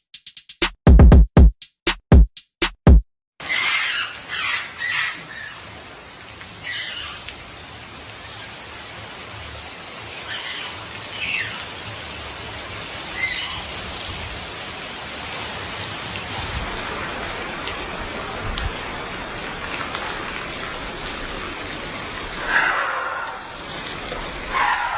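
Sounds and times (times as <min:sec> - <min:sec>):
short bird calls: 0:03.4 - 0:05.7
steady rain falling: 0:03.4 - 0:24.9.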